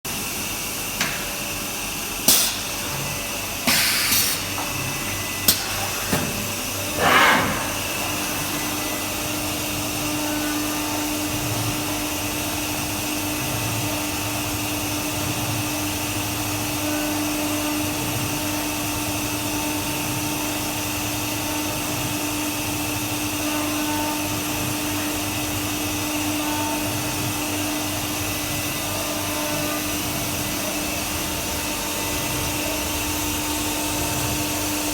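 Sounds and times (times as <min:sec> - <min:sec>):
cnc router milling wood: 0:00.1 - 0:34.9.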